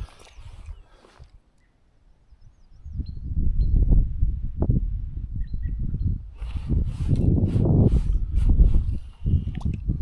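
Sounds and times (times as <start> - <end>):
wind gusting on microphone: 2.4 - 10.0.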